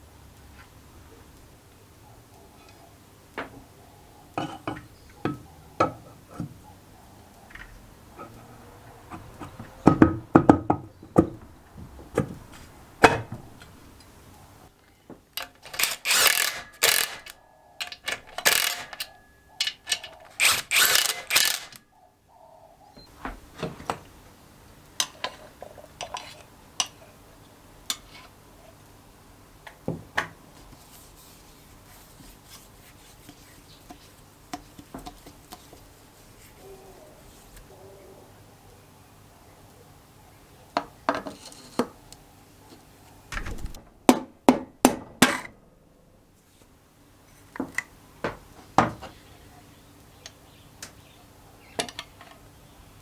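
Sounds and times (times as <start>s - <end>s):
metal parts clinking and knocking: 15.4s - 21.8s
loud noisy strokes: 15.6s - 17.3s, 19.9s - 21.8s.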